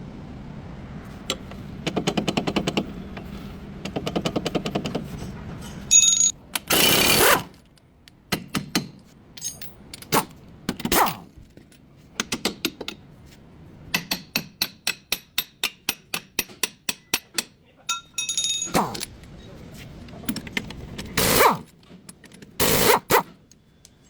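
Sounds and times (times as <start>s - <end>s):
air impact wrench hammering: 1.3s - 2.9s, 5.9s - 7.5s, 13.9s - 17.5s, 21.1s - 21.7s, 22.6s - 23.3s.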